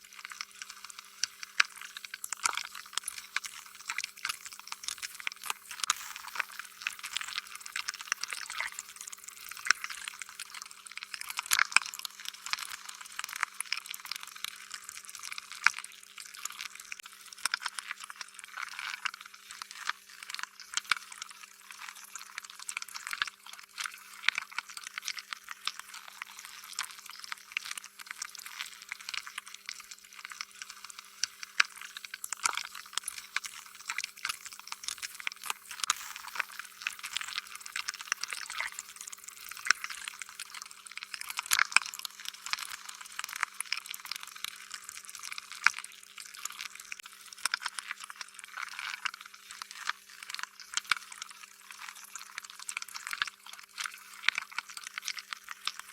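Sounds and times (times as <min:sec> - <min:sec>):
slime squelching and crackling: 0:22.5 - 0:51.0.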